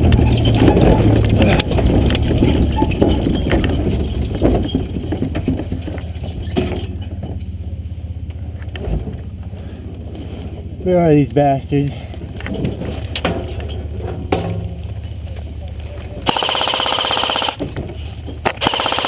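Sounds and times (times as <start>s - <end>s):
knocks and rattles: 0.0s - 7.7s, 12.2s - 15.2s, 16.2s - 19.0s
truck engine rumble: 0.0s - 19.0s.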